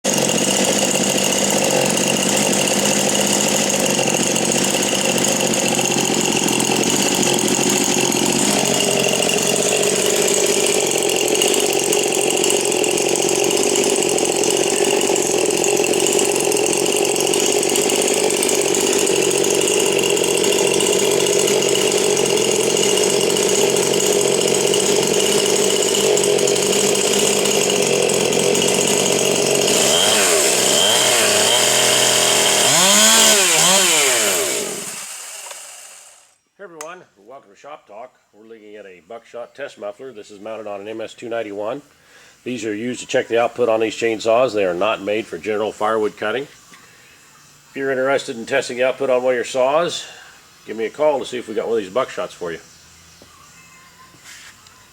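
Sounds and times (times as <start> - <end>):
chainsaw running at high revs: 0.0 - 36.4.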